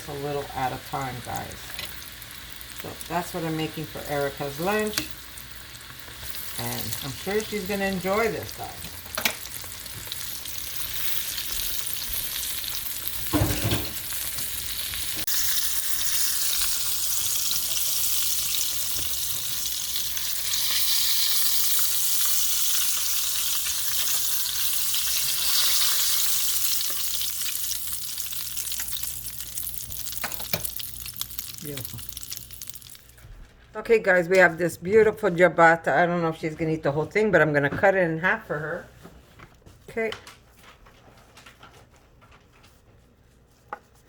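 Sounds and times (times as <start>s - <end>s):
mushrooms sizzling in hot oil: 0.0s - 33.1s.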